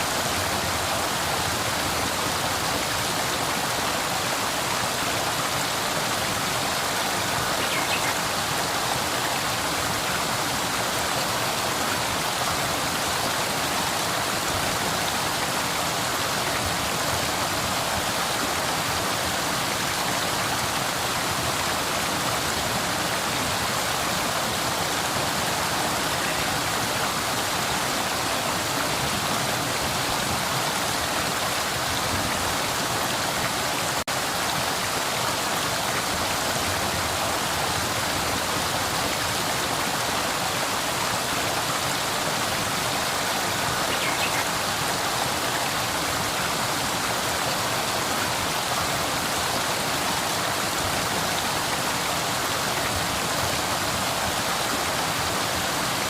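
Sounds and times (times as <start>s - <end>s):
river water rushing: 0.0s - 56.0s.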